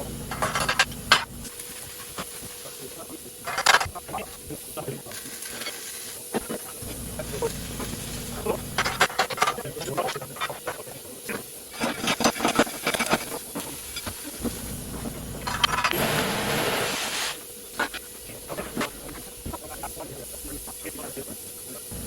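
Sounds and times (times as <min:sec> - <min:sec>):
low steady hum: 0:00.0 - 0:01.6, 0:06.8 - 0:10.0, 0:13.8 - 0:16.1
metal parts and tools clattering: 0:00.2 - 0:01.3, 0:15.4 - 0:16.0.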